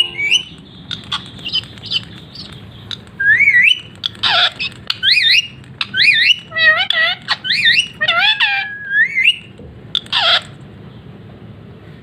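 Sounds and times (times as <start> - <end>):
parakeet calling: 0.0 - 10.5
parakeet harsh squawk: 3.2 - 10.5.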